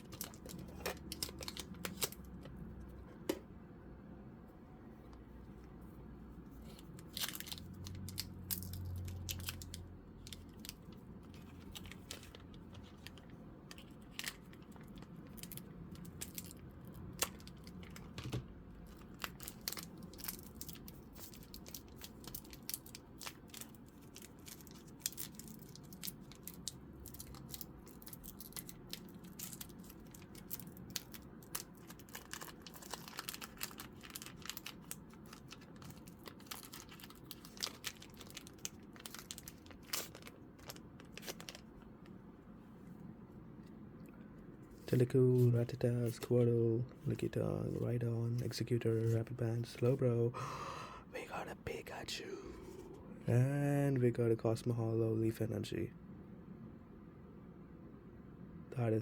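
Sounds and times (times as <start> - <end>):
cards clicking and crackling: 0.0 - 2.6, 6.8 - 41.7
foil wrapper tearing and crinkling: 18.9 - 41.7.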